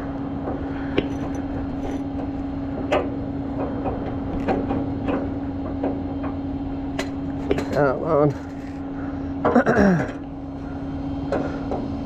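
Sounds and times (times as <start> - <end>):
truck engine droning: 0.0 - 12.0
knocks and rattles: 0.4 - 8.8.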